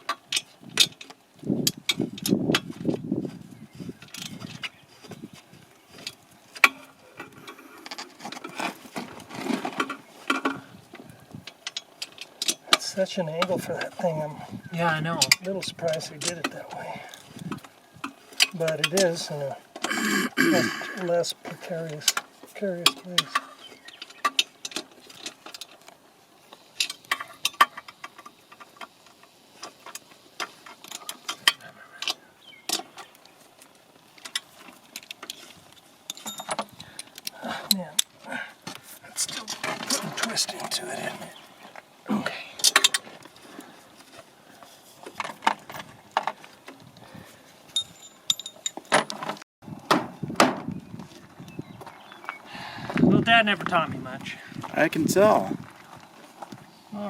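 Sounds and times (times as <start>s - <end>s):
hand tools clicking and clattering: 0.0s - 3.1s, 3.8s - 49.4s.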